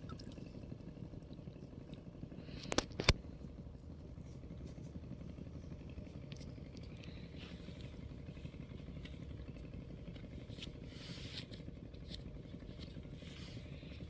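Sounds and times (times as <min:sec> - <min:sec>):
low engine-like rumble: 0:00.0 - 0:14.0.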